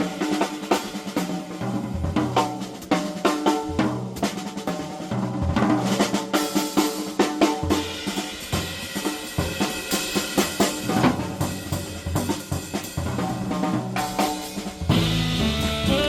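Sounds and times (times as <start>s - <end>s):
jazz drum solo: 0.0s - 16.0s.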